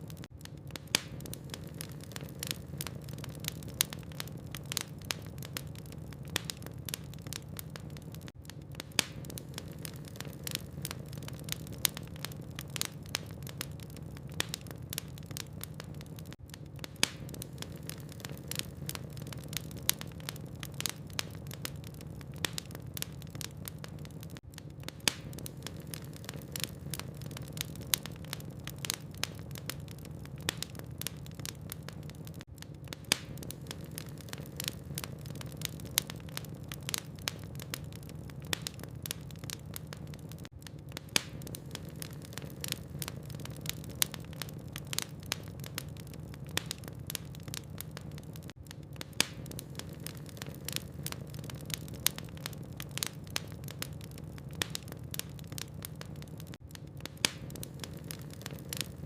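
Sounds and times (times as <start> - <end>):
logs crackling and popping: 0.0 - 59.0.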